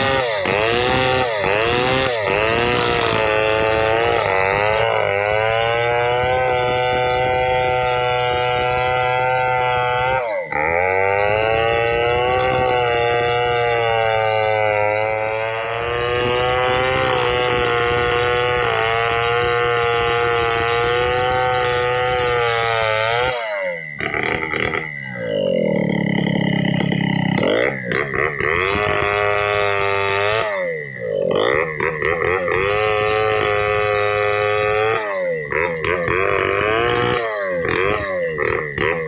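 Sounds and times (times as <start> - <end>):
chainsaw cutting wood: 0.0 - 39.0.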